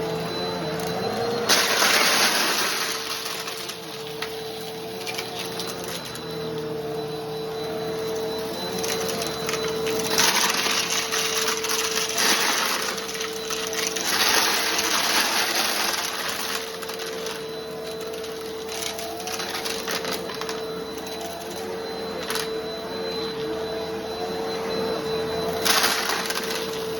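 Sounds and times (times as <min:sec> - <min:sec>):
vacuum motor whine: 0:00.0 - 0:26.9
debris crackling in vacuum: 0:01.4 - 0:04.4, 0:08.6 - 0:20.7.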